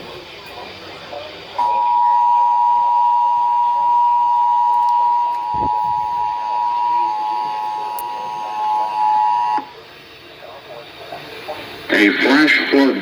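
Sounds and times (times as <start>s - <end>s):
two-tone alert signal: 1.6s - 9.7s.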